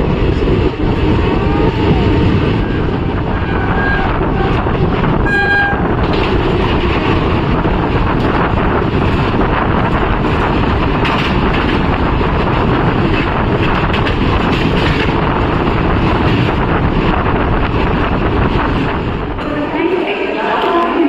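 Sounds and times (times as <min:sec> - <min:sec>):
train coach rumble and rattle: 0:00.0 - 0:21.0
train horn toot: 0:05.2 - 0:05.9.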